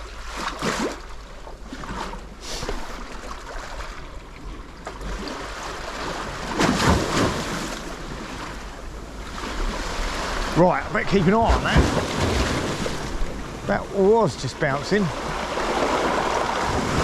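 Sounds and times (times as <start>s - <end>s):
sea waves breaking on shore: 0.0s - 17.0s
wind on microphone: 2.4s - 3.4s.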